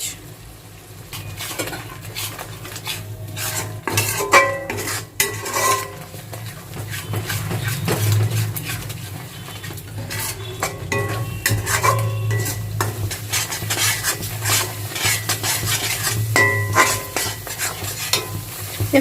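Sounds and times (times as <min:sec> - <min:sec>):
light sizzling: 0:00.0 - 0:19.0
spoon scraping in a pan: 0:01.1 - 0:19.0
spoon clinking on metal pan: 0:03.9 - 0:06.0, 0:10.2 - 0:13.1, 0:16.4 - 0:18.5.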